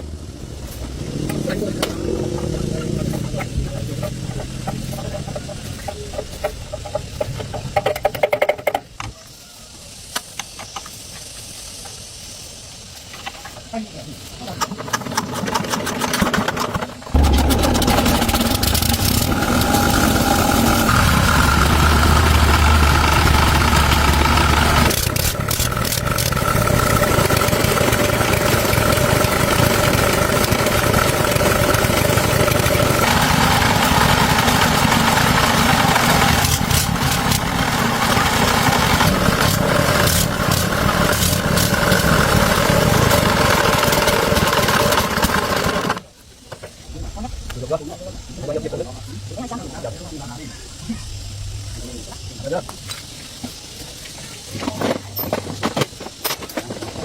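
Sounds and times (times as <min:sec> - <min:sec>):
tractor engine running: 0:00.0 - 0:08.8, 0:14.2 - 0:49.5.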